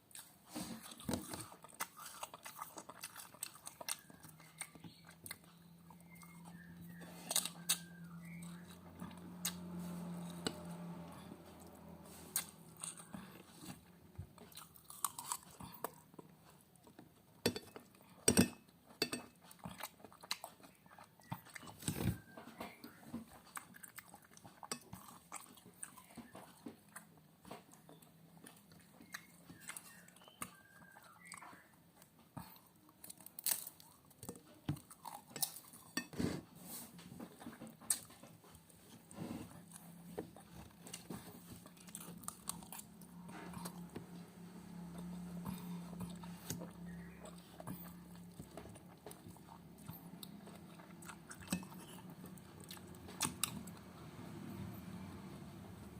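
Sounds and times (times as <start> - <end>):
chewing and crunching food: 0.0 - 55.9.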